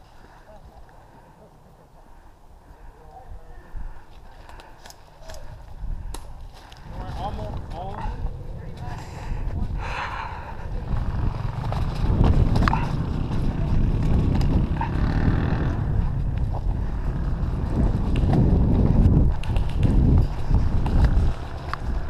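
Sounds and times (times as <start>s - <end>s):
wind buffeting microphone: 5.4s - 22.0s.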